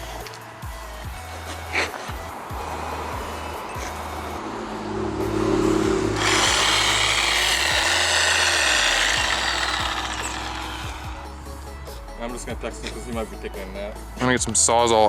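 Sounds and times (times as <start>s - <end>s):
power tool whirring: 6.2s - 11.4s.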